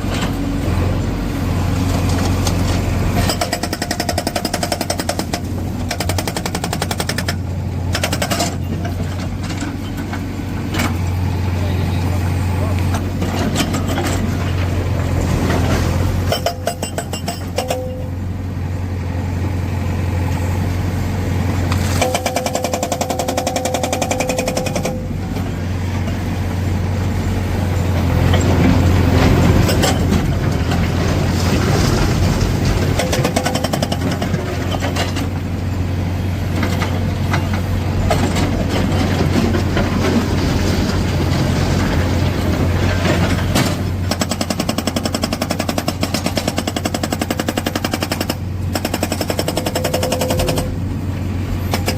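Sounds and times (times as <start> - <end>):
diesel engine under load: 0.0 - 51.9
hydraulic rock breaker hammering: 2.1 - 11.1, 16.2 - 18.2, 21.8 - 25.5, 28.0 - 35.4, 42.9 - 50.9, 51.6 - 51.9.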